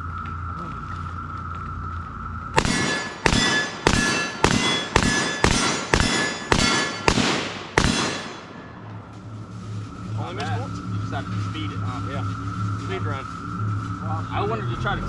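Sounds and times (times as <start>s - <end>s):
gunshots: 2.6s - 9.0s
metallic ringing: 2.6s - 14.2s.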